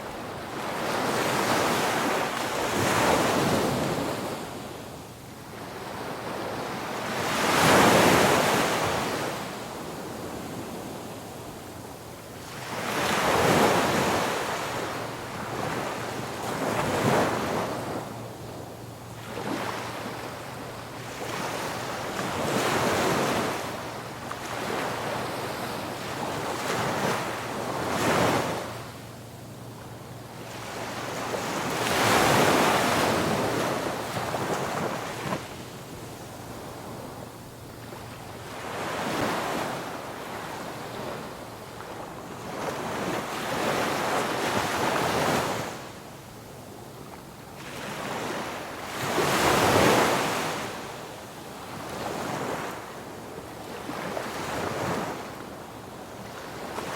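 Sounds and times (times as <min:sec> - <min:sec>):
ocean waves breaking on beach: 0:00.0 - 0:46.4, 0:47.0 - 0:56.9.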